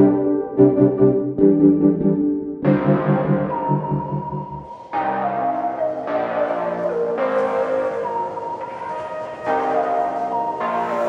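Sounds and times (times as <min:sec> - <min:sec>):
pulsing bass: 0:00.0 - 0:04.7
held descending melody: 0:00.0 - 0:11.0
synthesizer keyboard chords: 0:00.0 - 0:11.0.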